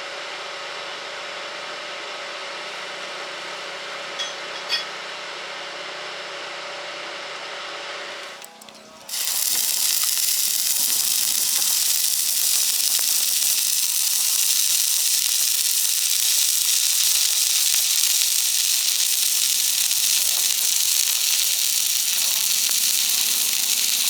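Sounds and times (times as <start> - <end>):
arc welding crackling hiss: 8.2 - 24.0.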